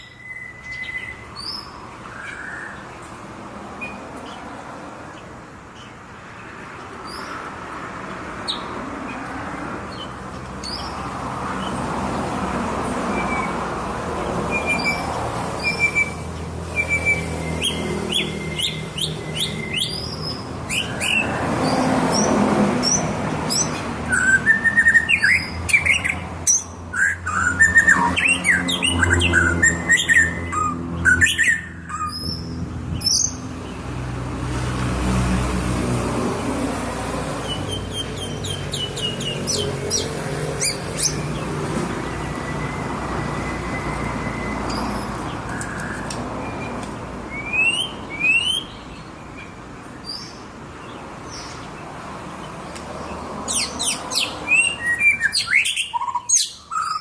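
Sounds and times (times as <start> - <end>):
bird singing whistled song: 0.0 - 2.8, 14.5 - 21.3, 23.0 - 33.3, 42.0 - 48.9, 53.5 - 57.0.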